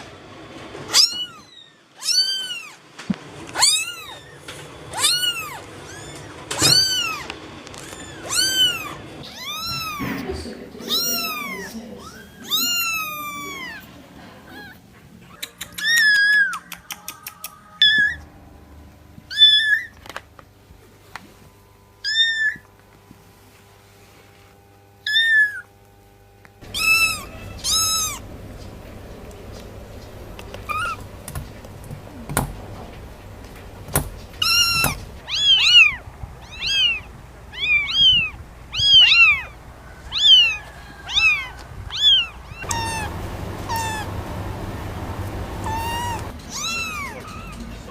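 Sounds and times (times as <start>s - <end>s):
kittens meowing: 0.9s - 2.8s, 3.5s - 10.2s, 10.8s - 13.9s, 14.5s - 16.7s, 19.3s - 20.0s, 22.0s - 22.7s, 25.0s - 25.7s, 26.6s - 28.3s, 30.4s - 31.4s, 33.9s - 47.9s
sharp knocks: 33.8s - 35.1s.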